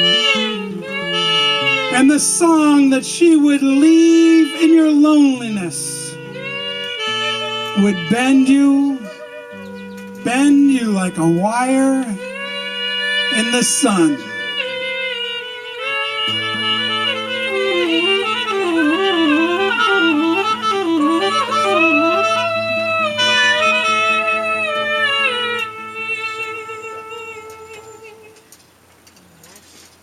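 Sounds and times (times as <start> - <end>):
person singing: 0.0 - 9.3, 10.2 - 15.6
saxophone: 0.0 - 28.7
guitar: 0.0 - 29.2.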